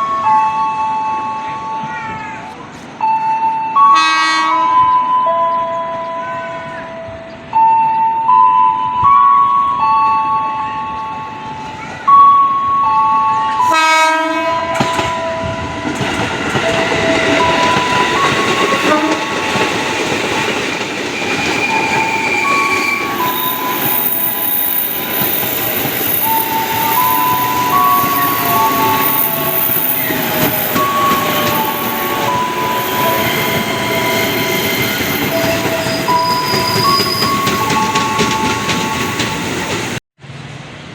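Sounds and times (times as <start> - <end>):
train horn: 3.5 - 5.1, 12.8 - 19.9, 21.2 - 24.5, 25.6 - 39.4
train wheels on rails: 13.6 - 40.0
train traction motors whining: 14.7 - 40.0.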